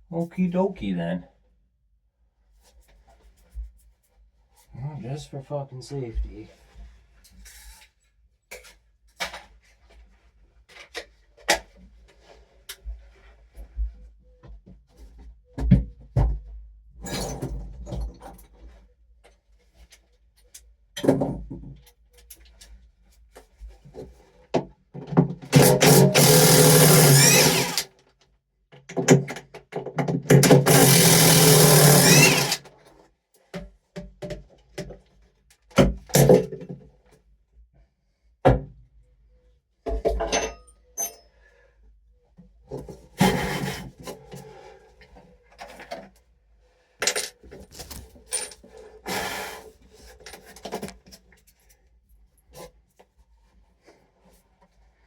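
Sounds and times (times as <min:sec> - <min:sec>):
power drill running: 0:25.5 - 0:27.9, 0:30.4 - 0:32.7.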